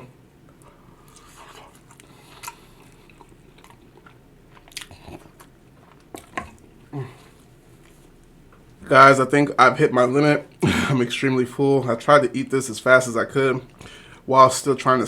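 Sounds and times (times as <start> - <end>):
person chewing food: 0.5 - 8.9.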